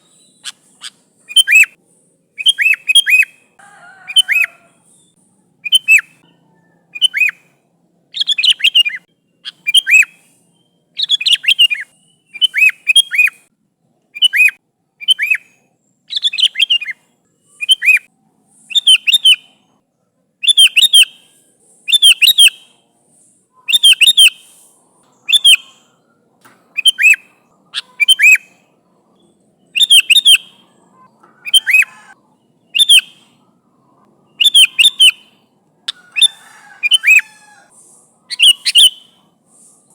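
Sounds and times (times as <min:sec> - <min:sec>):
bulbul calling: 0:00.0 - 0:01.8, 0:02.4 - 0:13.4, 0:23.6 - 0:39.7.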